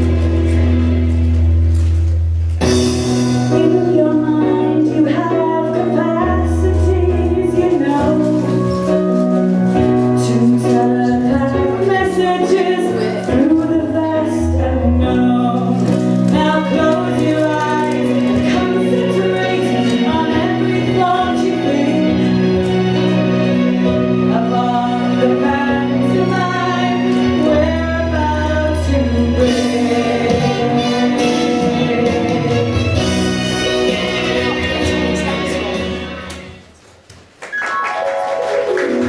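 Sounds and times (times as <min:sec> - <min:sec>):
song with singing: 0:10.2 - 0:36.1.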